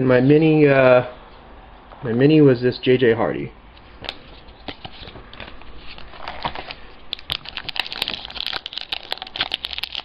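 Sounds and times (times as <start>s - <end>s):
card pack wrapper crinkling: 4.7s - 10.0s.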